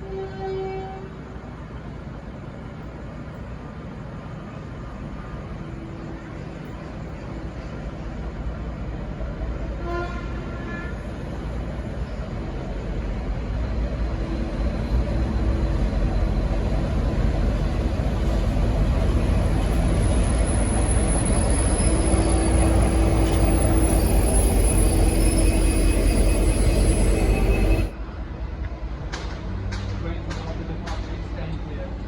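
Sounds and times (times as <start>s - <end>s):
diesel train rumbling past: 0.0s - 32.0s
thin high whine: 15.2s - 28.0s.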